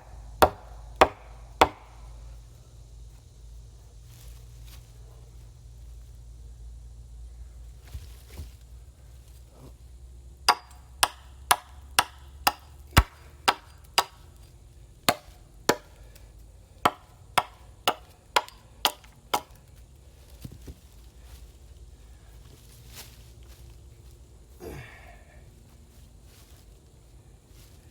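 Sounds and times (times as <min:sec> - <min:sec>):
hand tool striking wood: 0:00.0 - 0:02.0, 0:10.5 - 0:14.3, 0:15.1 - 0:16.0, 0:16.8 - 0:19.6.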